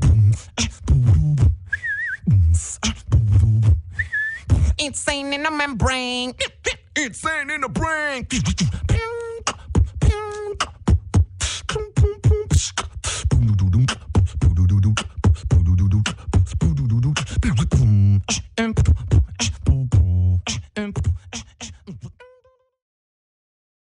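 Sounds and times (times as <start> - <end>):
beatboxing percussion clicks: 0.0 - 1.6, 2.2 - 3.8, 8.3 - 22.2
hummed bass notes: 0.0 - 1.7, 2.3 - 4.8, 8.6 - 21.2.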